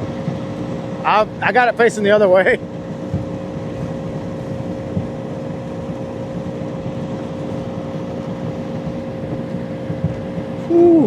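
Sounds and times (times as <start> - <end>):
outboard motor droning: 0.0 - 11.0.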